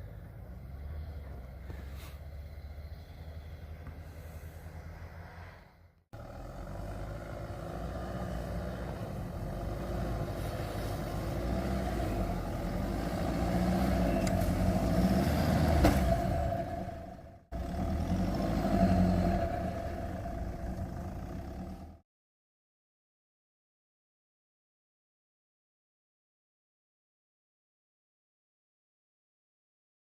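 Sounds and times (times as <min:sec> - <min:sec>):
car engine approaching: 0:00.0 - 0:22.0.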